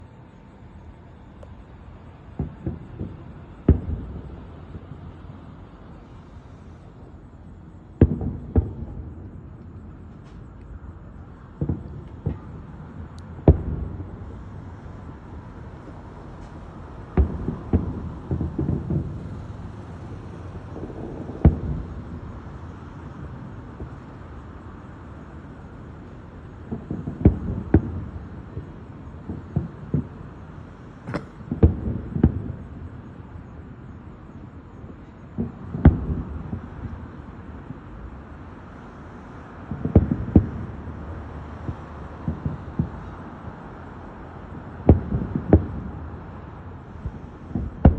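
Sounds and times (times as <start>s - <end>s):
low background rumble: 0.0s - 47.9s
firework shells booming: 2.3s - 5.0s, 7.9s - 9.5s, 11.4s - 22.4s, 26.7s - 33.6s, 34.8s - 37.0s, 39.6s - 43.2s, 44.8s - 46.2s, 46.9s - 47.9s.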